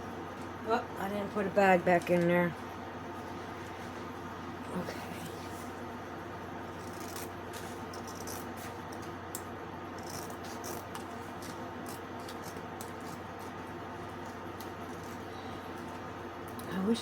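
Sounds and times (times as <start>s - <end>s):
steady low hum: 0.0s - 17.0s
rubbing and scratching handling noise: 10.0s - 16.1s.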